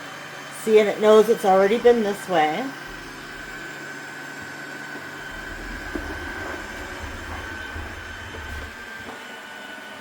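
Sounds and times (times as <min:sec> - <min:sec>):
robot vacuum running: 0:00.6 - 0:10.0
short bump: 0:02.8 - 0:03.7, 0:05.1 - 0:09.2.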